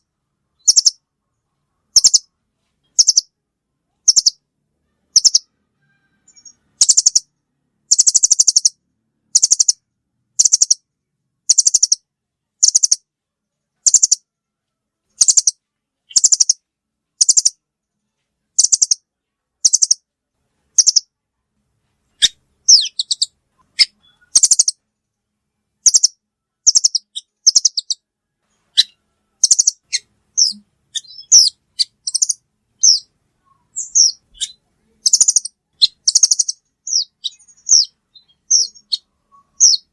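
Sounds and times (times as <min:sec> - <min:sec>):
bird chirping: 0:00.0 - 0:21.2, 0:22.0 - 0:39.9.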